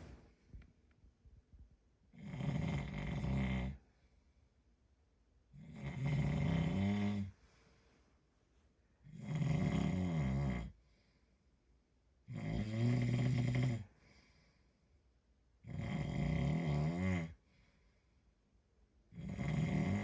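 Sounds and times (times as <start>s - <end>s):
man snoring: 2.2s - 3.8s, 5.6s - 7.3s, 9.1s - 10.7s, 12.3s - 13.9s, 15.7s - 17.4s, 19.2s - 20.0s.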